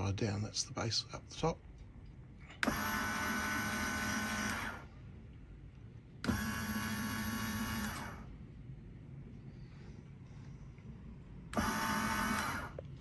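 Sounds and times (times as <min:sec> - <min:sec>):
electric motor whining: 0:02.6 - 0:04.9, 0:06.2 - 0:08.3, 0:11.5 - 0:12.8.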